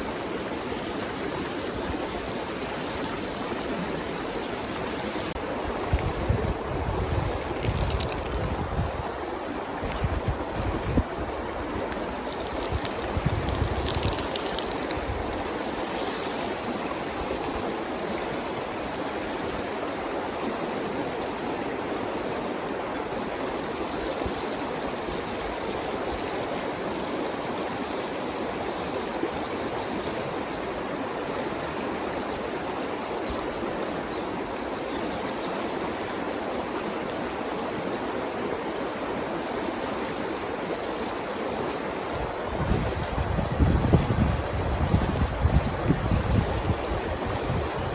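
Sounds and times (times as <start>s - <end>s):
river flowing: 0.0s - 47.9s
wind buffeting microphone: 5.4s - 15.8s, 42.1s - 47.9s.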